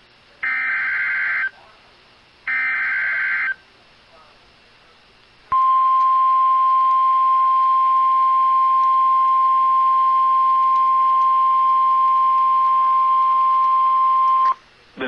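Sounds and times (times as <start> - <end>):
steady warning alarm tone: 0.4 - 1.5, 2.5 - 3.6, 5.6 - 14.6.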